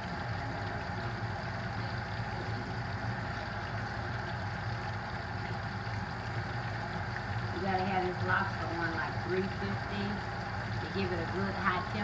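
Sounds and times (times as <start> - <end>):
deep fryer rumbling: 0.0 - 12.0
oil frying hiss: 0.0 - 12.0.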